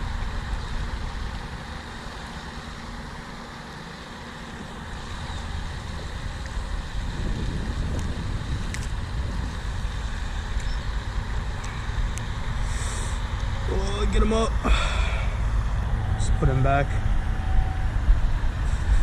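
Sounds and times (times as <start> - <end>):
distant road traffic rush: 0.0 - 19.0
wind buffeting microphone: 5.1 - 12.7.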